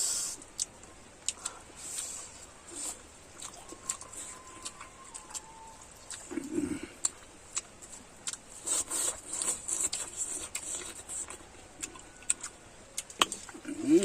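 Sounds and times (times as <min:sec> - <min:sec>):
mouth clicks and smacks: 0:00.3 - 0:14.0
wet chewing: 0:00.3 - 0:14.0.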